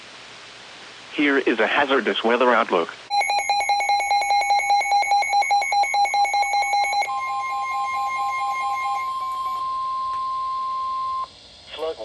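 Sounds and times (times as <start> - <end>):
rapid buzzy alert beeping: 3.1 - 9.7
steady warning alarm tone: 3.1 - 11.3.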